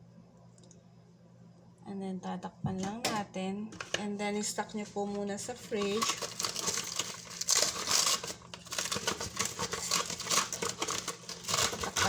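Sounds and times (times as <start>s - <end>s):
plastic cling wrap crinkling: 5.2s - 12.0s.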